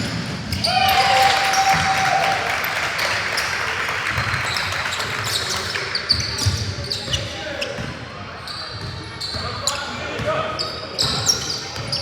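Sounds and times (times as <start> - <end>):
sneaker squeaks: 3.4 - 12.0.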